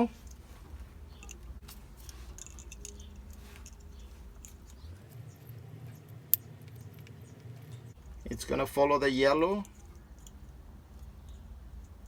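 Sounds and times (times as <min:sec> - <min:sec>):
hands handling wires: 0:00.1 - 0:08.2.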